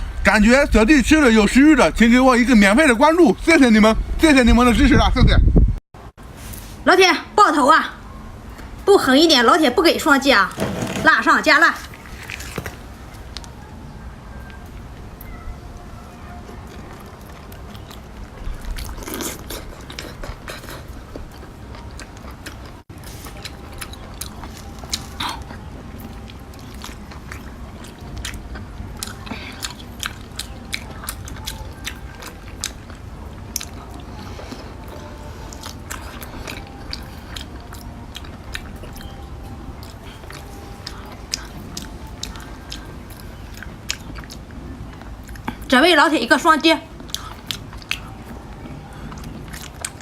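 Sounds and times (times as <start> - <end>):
crunchy chewing: 16.2 - 45.7, 47.0 - 50.0.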